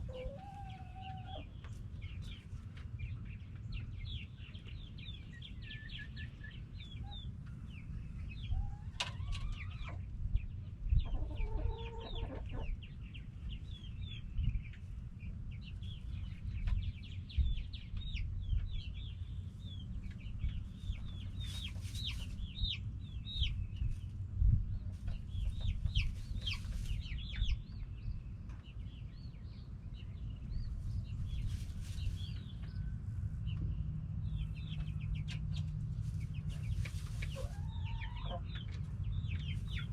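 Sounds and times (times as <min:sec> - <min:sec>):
hens clucking: 0:00.0 - 0:03.7, 0:06.0 - 0:10.2, 0:11.0 - 0:13.0, 0:24.8 - 0:27.8, 0:34.4 - 0:39.9.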